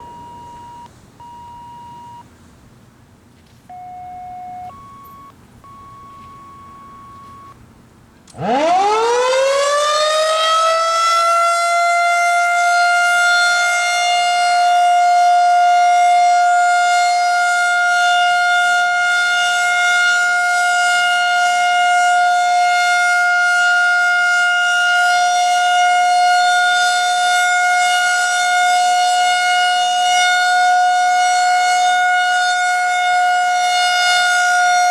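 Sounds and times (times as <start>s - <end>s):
short electronic beeps: 0.0s - 2.2s, 3.7s - 7.6s
warning siren winding up: 8.3s - 12.6s.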